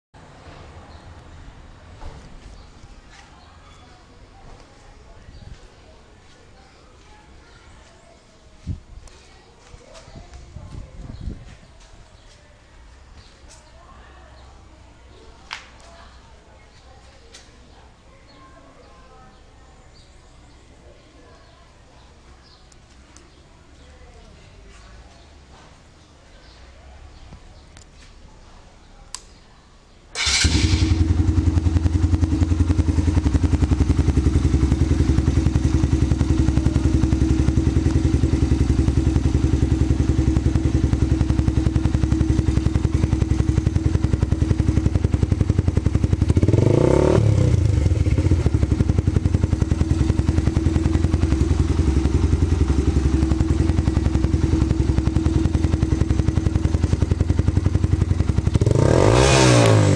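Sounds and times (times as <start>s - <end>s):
click: 29.1s - 29.4s
motorcycle engine idling and revving: 30.2s - 59.9s.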